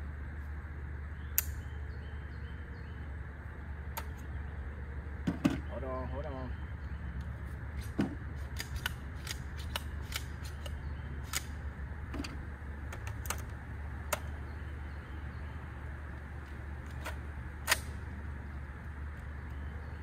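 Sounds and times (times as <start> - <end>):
metallic clicks of gun handling: 8.6 - 11.6.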